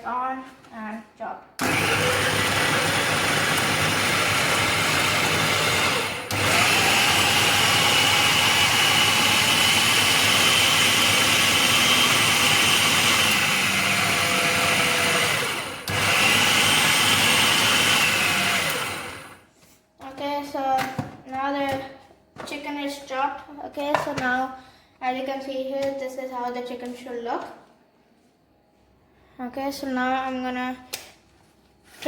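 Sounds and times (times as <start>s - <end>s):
food chopper motor whining: 1.6s - 19.4s.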